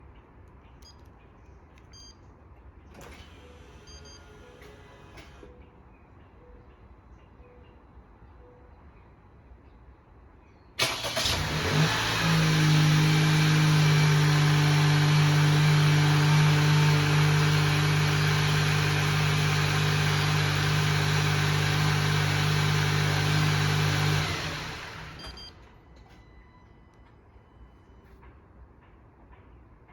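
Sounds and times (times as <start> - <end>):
car engine idling: 10.8 - 25.4
car engine cranking: 10.8 - 25.5.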